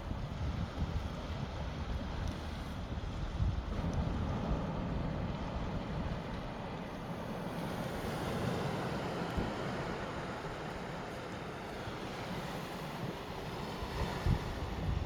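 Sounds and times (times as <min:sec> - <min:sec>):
wind buffeting microphone: 0:00.0 - 0:06.5, 0:12.9 - 0:15.0
sea waves washing ashore: 0:00.0 - 0:15.0.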